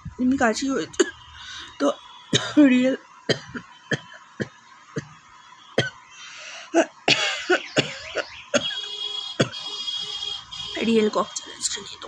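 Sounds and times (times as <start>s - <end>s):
person coughing: 7.1s - 8.8s.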